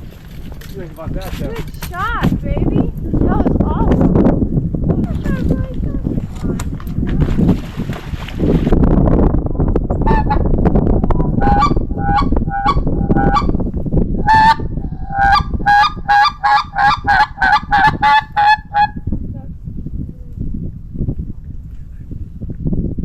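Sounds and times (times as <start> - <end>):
goose honking: 10.1 - 10.4, 11.3 - 13.6, 14.3 - 18.9.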